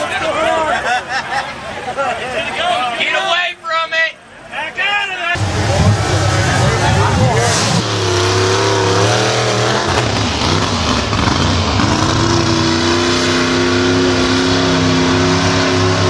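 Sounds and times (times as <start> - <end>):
car engine revving: 5.4 - 16.0.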